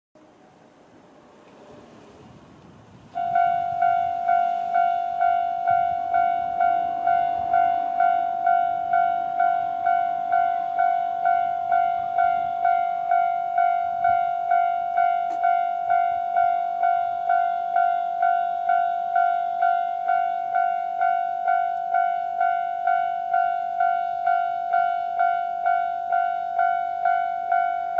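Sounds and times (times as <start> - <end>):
level crossing alarm bell ringing: 3.2 - 27.9.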